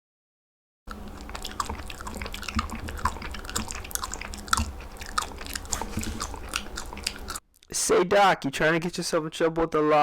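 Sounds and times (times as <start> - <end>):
crunchy chewing: 0.9 - 7.7
faint steady hum: 0.9 - 7.9.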